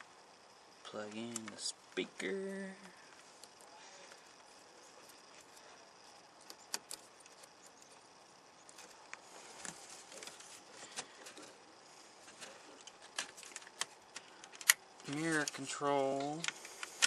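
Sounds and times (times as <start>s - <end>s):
faint handling noises: 0.9s - 17.0s.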